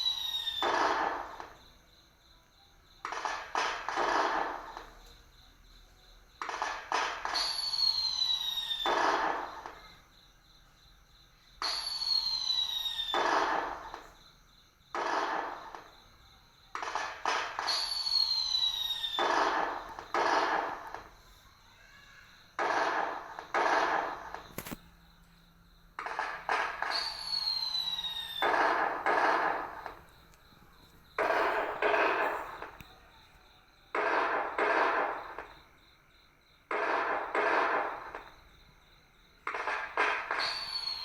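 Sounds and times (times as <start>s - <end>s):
crackling firework burst: 6.4s - 9.8s, 11.6s - 14.2s, 16.8s - 21.2s, 22.4s - 25.0s, 26.0s - 33.0s, 33.9s - 35.6s, 36.7s - 38.4s, 39.4s - 41.0s
firework launch: 6.4s - 9.8s, 16.8s - 21.2s, 22.6s - 25.0s, 26.0s - 32.9s, 34.0s - 35.6s, 36.7s - 38.4s, 39.4s - 41.0s.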